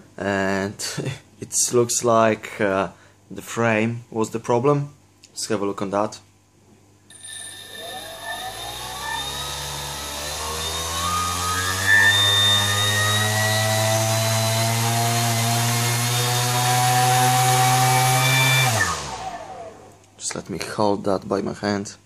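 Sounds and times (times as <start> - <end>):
drone motor whirring: 7.1 - 19.9.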